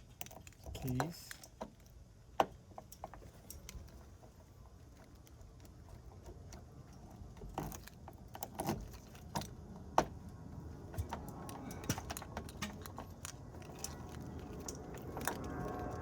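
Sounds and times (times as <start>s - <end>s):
keys jangling: 11.0s - 16.0s.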